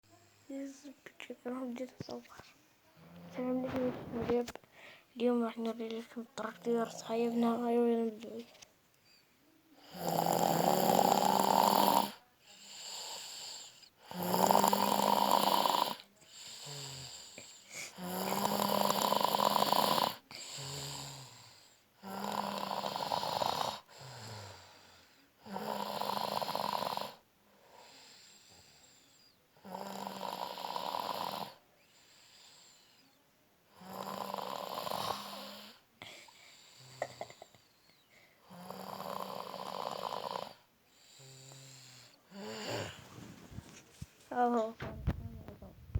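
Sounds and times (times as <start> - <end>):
soft breaths out: 2.3 - 5.2, 40.9 - 45.9
man snoring loudly: 9.9 - 12.2, 12.8 - 17.2, 17.9 - 24.6, 25.4 - 27.2, 29.6 - 31.6, 33.8 - 35.8, 38.5 - 40.6, 41.2 - 43.1.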